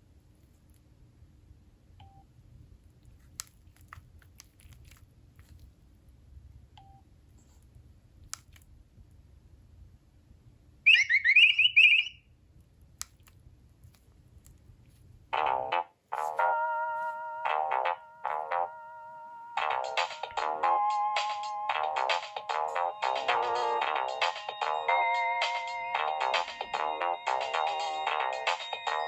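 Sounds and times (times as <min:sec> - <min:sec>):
warbling electronic phone tones: 0:10.9 - 0:12.1.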